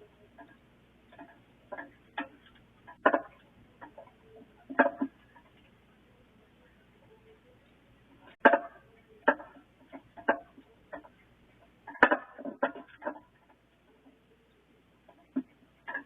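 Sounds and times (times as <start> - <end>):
sharp knocks and clatters: 0.4 - 5.8, 8.3 - 14.2.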